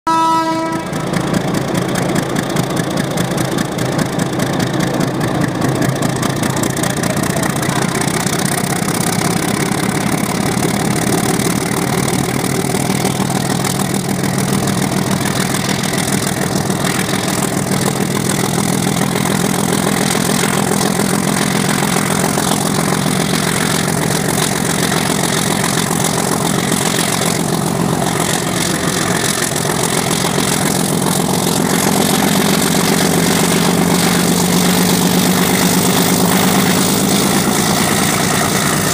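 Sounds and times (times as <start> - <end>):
diesel engine droning: 0.1 - 38.9.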